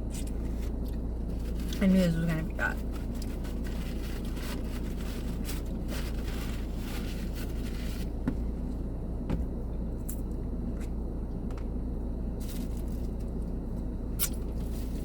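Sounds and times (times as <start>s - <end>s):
car cabin hum: 0.0s - 10.0s
paper rustling: 2.8s - 8.1s.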